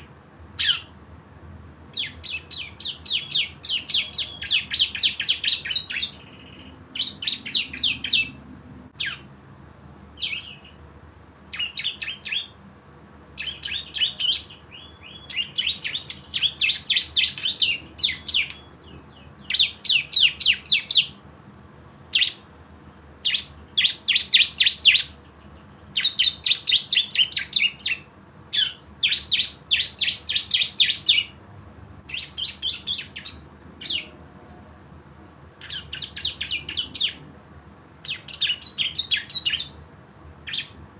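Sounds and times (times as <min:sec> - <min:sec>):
bird trilling rapidly: 0:00.6 - 0:01.0, 0:01.9 - 0:09.3, 0:10.2 - 0:10.8, 0:11.5 - 0:12.6, 0:13.4 - 0:21.2, 0:22.1 - 0:22.5, 0:23.2 - 0:31.4, 0:32.1 - 0:34.2, 0:35.6 - 0:37.2, 0:38.1 - 0:39.8, 0:40.4 - 0:40.8.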